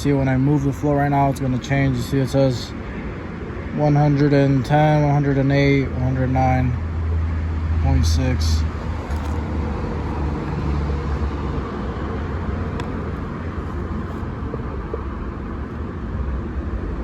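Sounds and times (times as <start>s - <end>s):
low background rumble with hiss: 0.0s - 17.0s.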